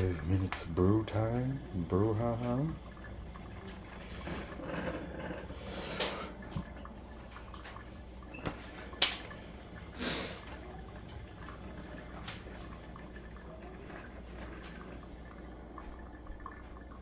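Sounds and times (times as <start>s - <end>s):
coffee maker humming: 0.0s - 17.0s.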